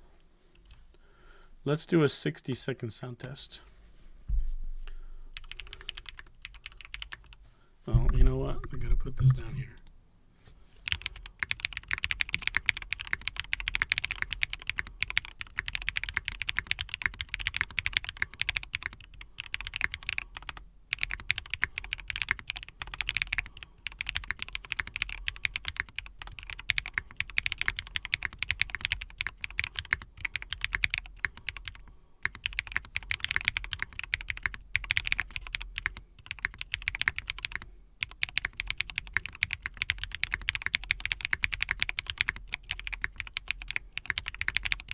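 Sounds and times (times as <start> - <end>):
mechanical keyboard typing: 5.4 - 7.3, 10.9 - 44.9.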